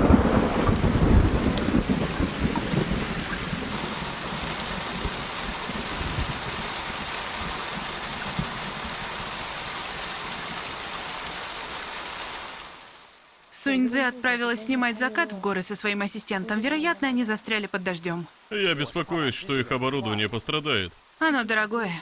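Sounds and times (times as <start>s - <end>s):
thunder rumbling: 0.0s - 9.5s
steady rain pouring: 0.0s - 22.0s.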